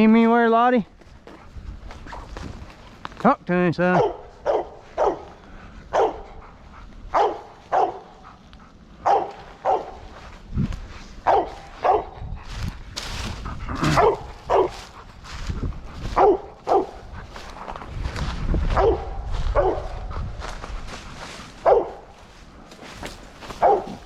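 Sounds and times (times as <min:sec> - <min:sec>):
dog barking: 0:03.9 - 0:08.4, 0:09.0 - 0:10.2, 0:11.2 - 0:12.2, 0:13.7 - 0:15.0, 0:16.0 - 0:17.1, 0:18.7 - 0:20.2, 0:21.6 - 0:22.1, 0:23.5 - 0:24.0.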